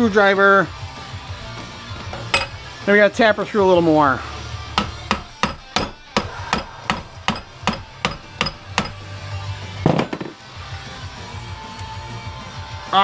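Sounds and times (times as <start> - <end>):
hammer striking screwdriver: 4.8 - 9.0.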